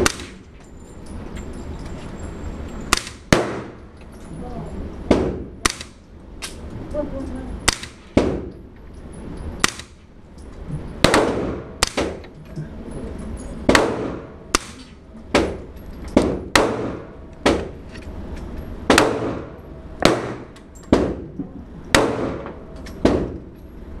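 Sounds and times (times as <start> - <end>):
suppressed gunshots with echo: 2.9 - 3.8, 11.0 - 12.2, 16.2 - 17.7, 18.9 - 21.3, 21.9 - 23.4.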